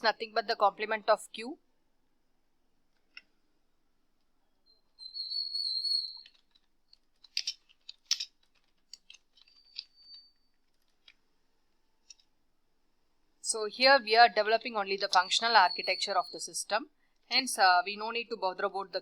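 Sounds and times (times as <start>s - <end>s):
high whistle-like tone: 4.7s - 6.3s, 15.2s - 16.4s.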